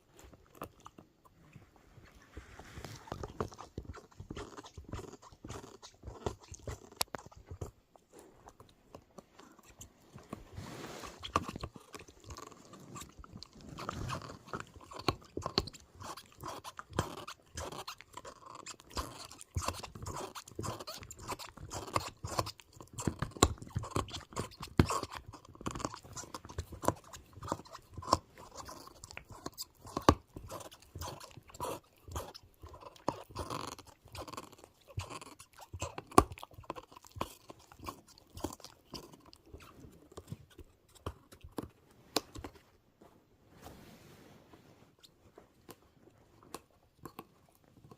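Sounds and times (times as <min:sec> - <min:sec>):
animal chewing crunchily: 0:00.0 - 0:42.6
teeth squeaking: 0:03.1 - 0:07.8, 0:11.2 - 0:41.6.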